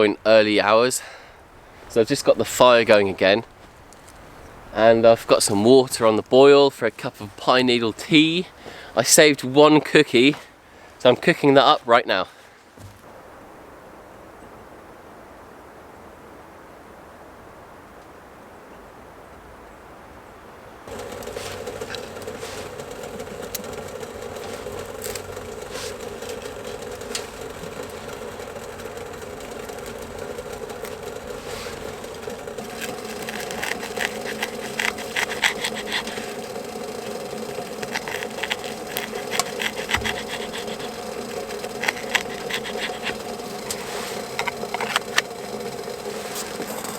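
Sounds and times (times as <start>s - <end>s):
wood fire rushing and crackling: 20.9s - 46.9s.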